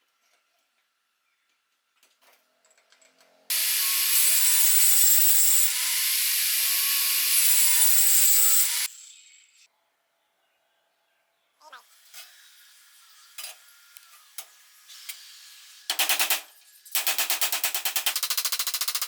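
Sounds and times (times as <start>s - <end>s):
angle grinder cutting wood: 3.5s - 8.9s.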